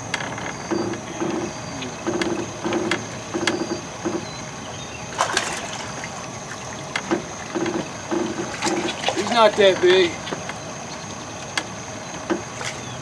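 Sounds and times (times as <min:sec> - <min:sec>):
fish splashing at surface: 0:05.1 - 0:10.1.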